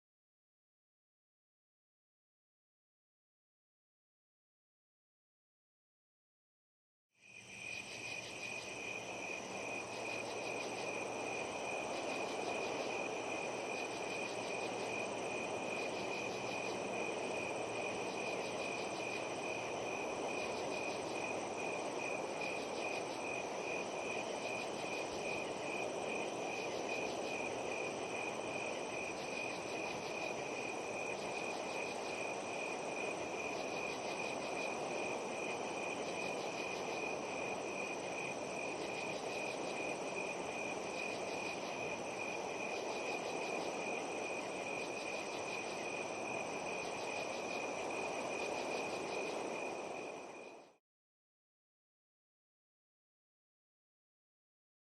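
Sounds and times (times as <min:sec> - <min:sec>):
high insect drone: 0:07.2 - 0:50.7
crickets chirping: 0:07.2 - 0:50.8.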